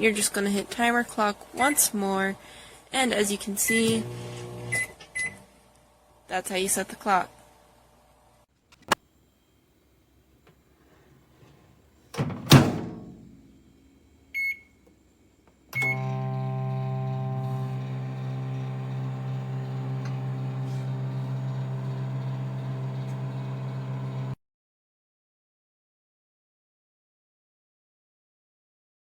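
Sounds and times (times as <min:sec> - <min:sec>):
microwave oven humming: 0:03.8 - 0:05.0, 0:15.8 - 0:24.4.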